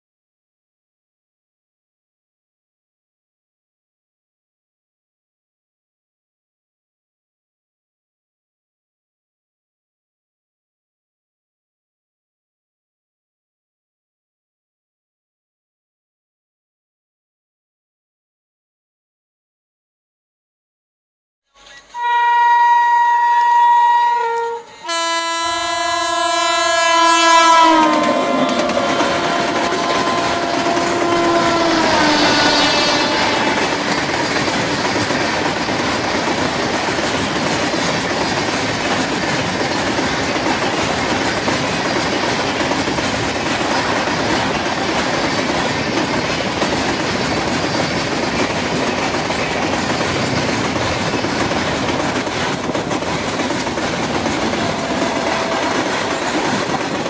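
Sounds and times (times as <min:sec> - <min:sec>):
diesel locomotive horn: 0:21.8 - 0:34.2, 0:54.6 - 0:56.1
train wheels clattering on rails: 0:27.5 - 0:57.0.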